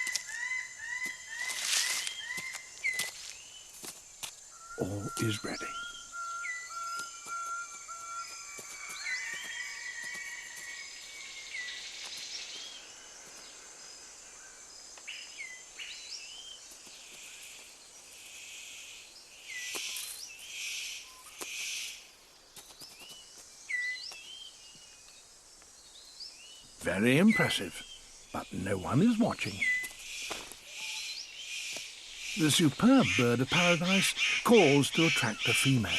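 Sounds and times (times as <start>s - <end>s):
high insect drone: 0.0s - 35.9s.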